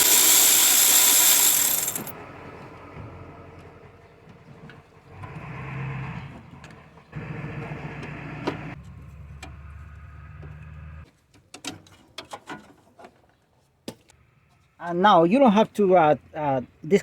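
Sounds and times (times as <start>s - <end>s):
cordless power tool motor: 0.0s - 2.1s.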